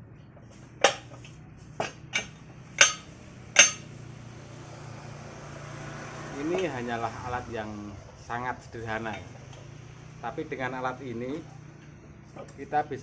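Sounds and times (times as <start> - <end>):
low steady hum: 0.0 - 13.0
metal-on-metal strikes ringing: 1.8 - 4.0.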